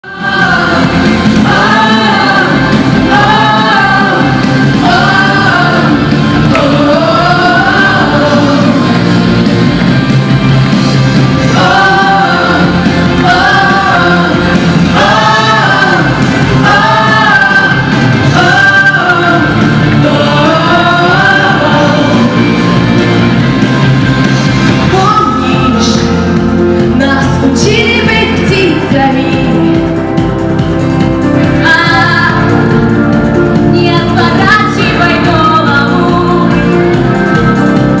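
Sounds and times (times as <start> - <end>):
voices singing a melody: 0.0 - 9.8, 11.2 - 23.3.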